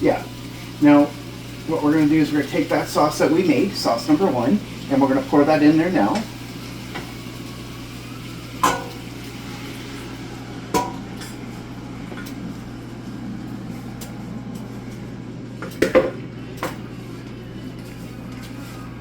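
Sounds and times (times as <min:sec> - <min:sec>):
steady low hum: 0:00.0 - 0:19.0
metal utensils clinking on pan: 0:08.6 - 0:09.0.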